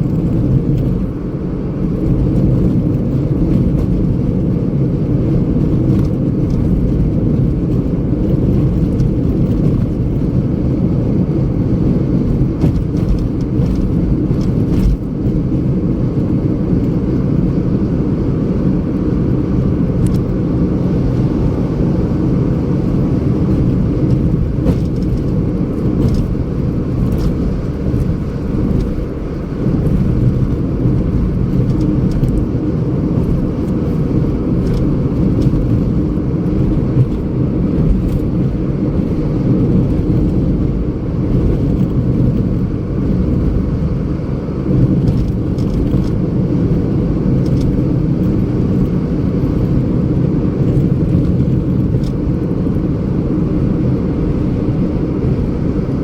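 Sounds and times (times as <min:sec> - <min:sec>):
car driving rumble: 0:00.0 - 0:56.0.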